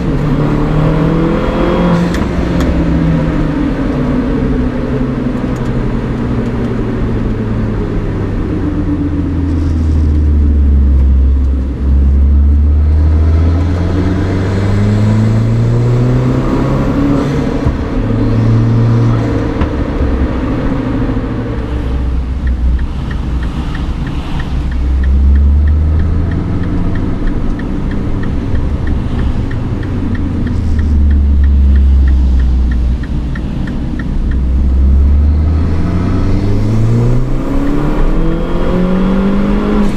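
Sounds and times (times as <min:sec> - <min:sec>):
car engine accelerating: 0:00.0 - 0:39.9
fast light ticking: 0:22.1 - 0:35.3.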